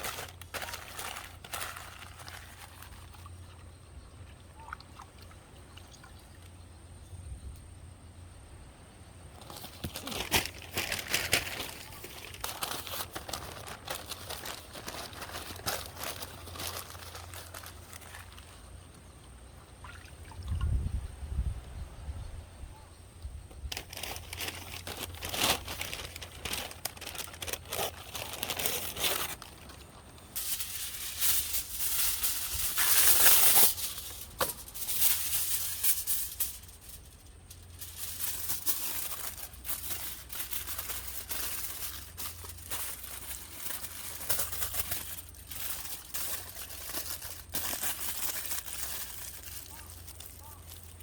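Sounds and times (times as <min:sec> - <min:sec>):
wrapping material crinkling: 0:00.0 - 0:03.5, 0:09.4 - 0:18.7, 0:23.7 - 0:51.0.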